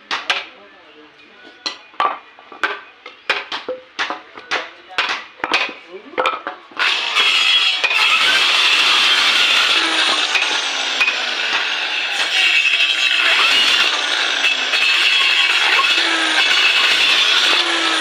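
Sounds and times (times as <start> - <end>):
power tool cutting wood: 6.8 - 18.0.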